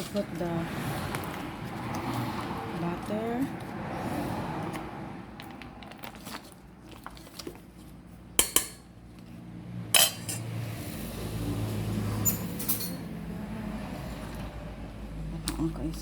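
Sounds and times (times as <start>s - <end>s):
utensils and pot clinking: 8.4s - 8.9s, 10.0s - 10.6s, 12.2s - 13.1s.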